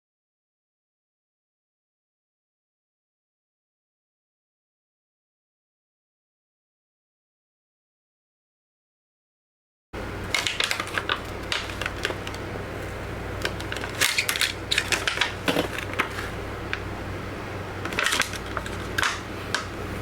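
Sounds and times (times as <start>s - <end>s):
steady low hum: 10.0s - 20.0s
plastic film peeling crackles: 10.2s - 16.9s, 17.8s - 19.8s.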